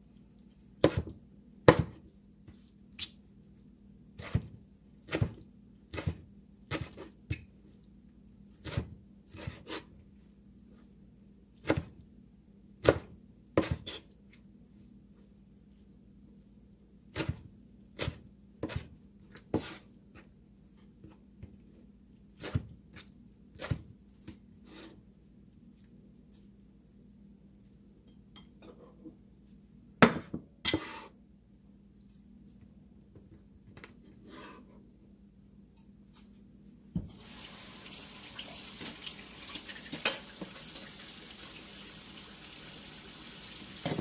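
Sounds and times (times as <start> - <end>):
knife chopping on cutting board: 0.8 - 1.1, 1.7 - 2.0, 5.1 - 7.1, 12.8 - 14.0.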